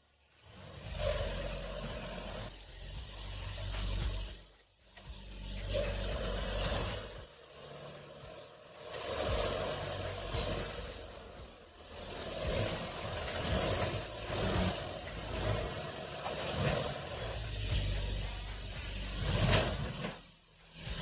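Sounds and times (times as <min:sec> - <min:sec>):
engine running: 0:00.0 - 0:21.0.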